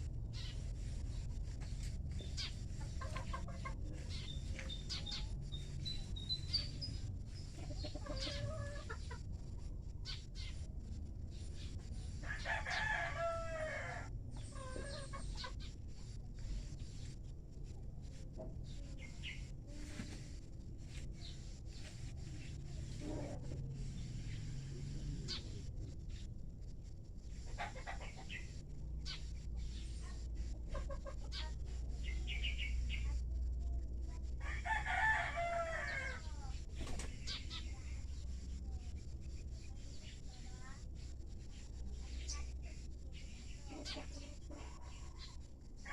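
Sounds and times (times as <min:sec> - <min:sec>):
steady low rumble: 0:00.0 - 0:45.8
steady low hum: 0:00.0 - 0:45.9
faint bird calls: 0:00.3 - 0:01.2
rooster crowing: 0:12.2 - 0:14.1, 0:34.4 - 0:36.2.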